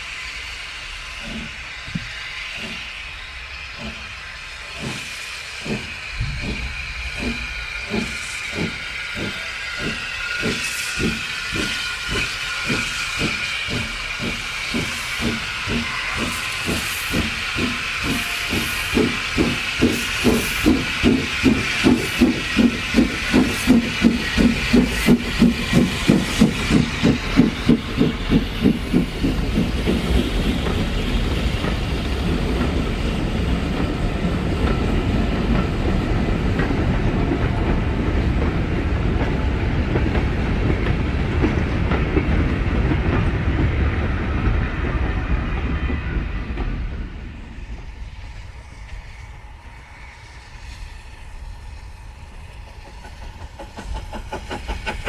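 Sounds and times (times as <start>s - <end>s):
steam locomotive exhaust beats: 0.0s - 55.0s
train carriages rumbling: 0.0s - 55.0s.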